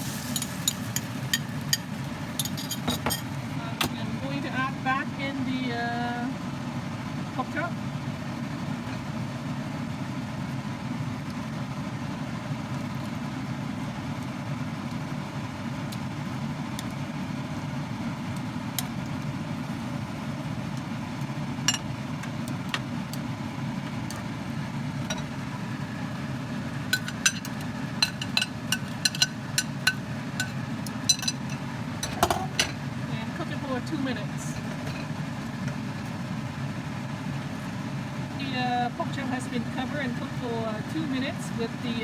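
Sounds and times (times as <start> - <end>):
food sizzling in a frying pan: 0.0 - 3.6, 26.8 - 32.8
low kitchen hum: 0.0 - 42.0.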